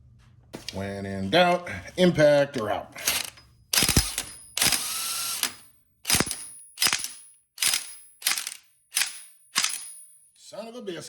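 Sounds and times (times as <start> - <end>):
impact wrench hammering: 3.0 - 10.1.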